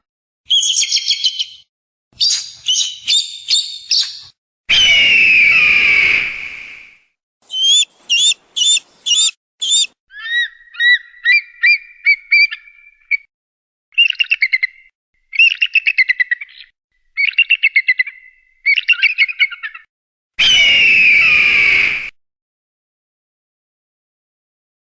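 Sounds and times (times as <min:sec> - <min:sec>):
eagle squealing and piping: 0:02.2 - 0:05.1, 0:07.5 - 0:11.5
eagle harsh scream: 0:07.5 - 0:09.9.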